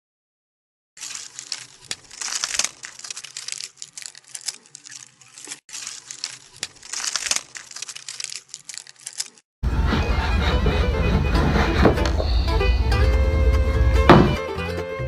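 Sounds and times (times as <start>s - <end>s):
blade scraping wood: 9.7s - 12.5s.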